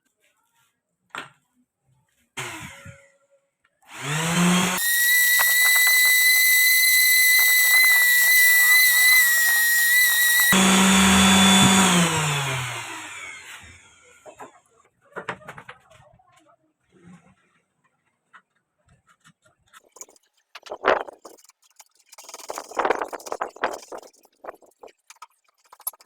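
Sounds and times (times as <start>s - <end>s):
circular saw whining: 3.9s - 14.2s.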